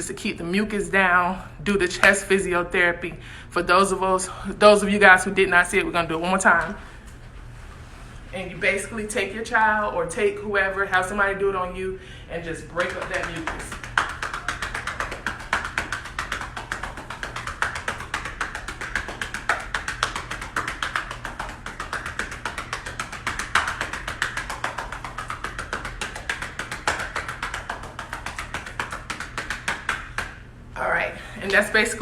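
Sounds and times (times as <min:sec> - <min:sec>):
hands patting on a back: 0:12.7 - 0:30.4.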